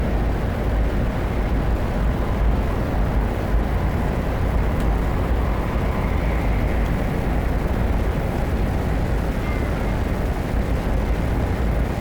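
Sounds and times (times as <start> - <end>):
faint steady whine: 0.0 - 12.0
train cabin deep rumble: 0.0 - 12.0.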